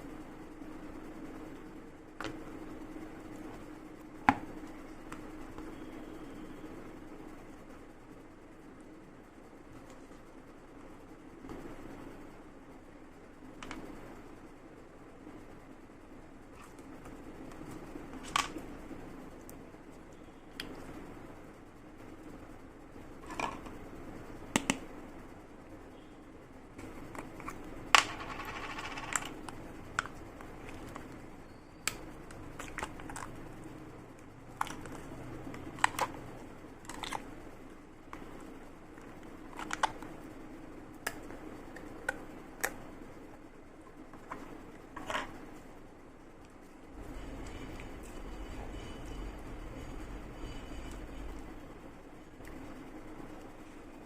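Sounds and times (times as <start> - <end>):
low steady hum: 0.0 - 54.0.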